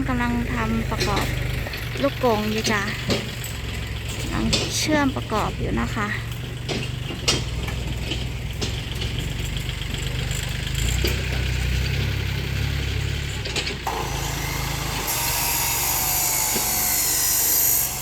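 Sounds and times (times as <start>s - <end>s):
engine rumbling: 0.0s - 18.0s
building work knocks: 6.5s - 9.2s
power tool whine: 13.8s - 18.0s.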